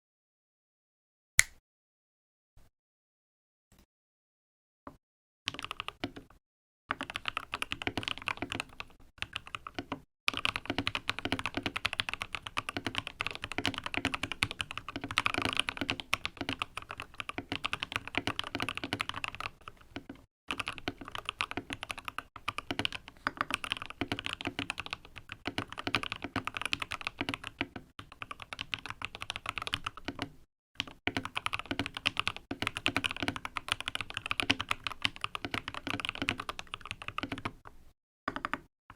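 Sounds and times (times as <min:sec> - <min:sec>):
mechanical keyboard typing clacks: 0:09.2 - 0:37.6.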